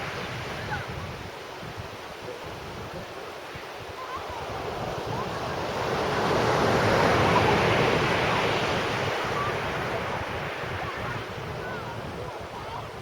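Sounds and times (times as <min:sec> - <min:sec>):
wind buffeting microphone: 0:00.0 - 0:13.0
sea waves breaking: 0:03.2 - 0:13.0.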